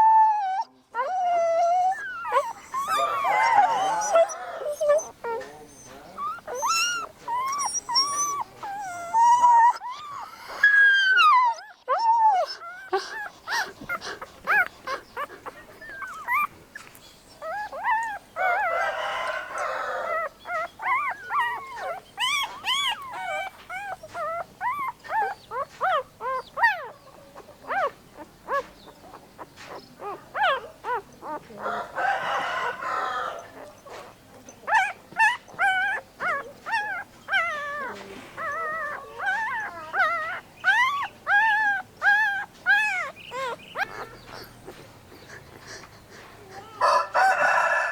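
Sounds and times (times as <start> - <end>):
puppies whining and yelping: 0.0 - 47.9.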